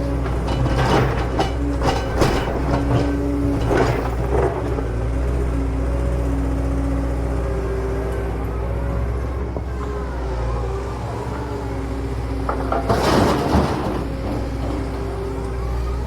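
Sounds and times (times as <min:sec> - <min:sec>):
excavator engine running: 0:00.0 - 0:16.0
metal knocks and clanks: 0:00.2 - 0:04.9, 0:12.4 - 0:15.2.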